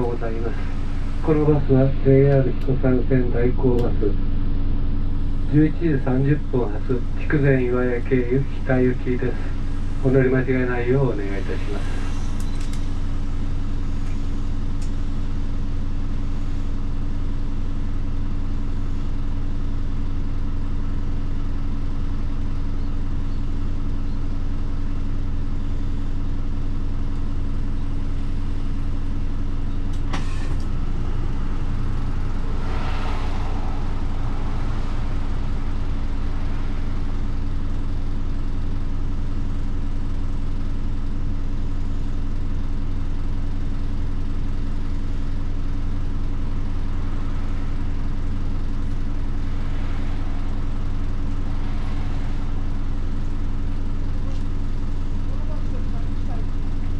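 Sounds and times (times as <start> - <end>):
bus diesel engine idling: 0.0 - 56.9
brief hiss: 30.0 - 31.5, 32.2 - 37.4.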